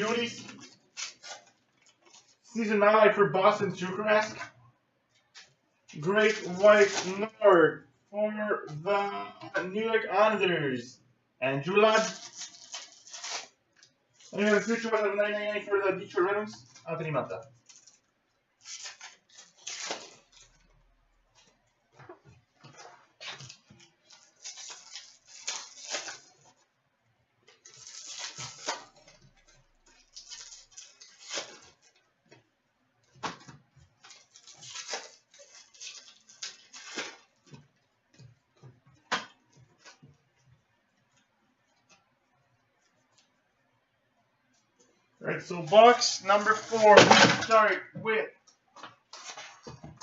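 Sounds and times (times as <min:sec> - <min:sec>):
packaging crinkling and rustling: 0:00.0 - 0:02.8, 0:05.1 - 0:07.4, 0:11.8 - 0:15.0, 0:16.5 - 0:26.8, 0:27.4 - 0:42.0, 0:45.5 - 0:47.8, 0:48.7 - 0:50.0.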